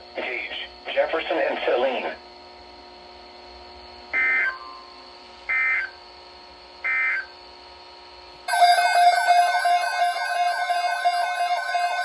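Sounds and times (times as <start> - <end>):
electronic tones with sweeping pitches: 8.5 - 12.0
shrill digital screeches: 8.5 - 12.0.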